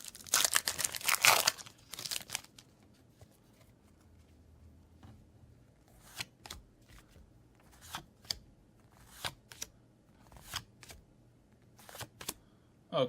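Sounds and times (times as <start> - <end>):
cards flicked and slid by hand: 5.8 - 11.0, 11.7 - 12.4.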